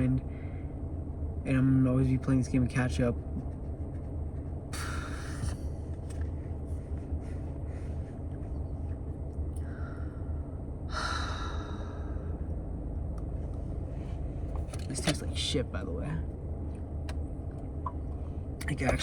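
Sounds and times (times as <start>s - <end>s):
low rumble: 0.0s - 19.0s
faint breath: 0.3s - 0.8s, 4.8s - 5.8s, 7.2s - 8.2s, 9.6s - 12.5s
person sighing heavily: 4.8s - 5.6s, 9.6s - 12.4s.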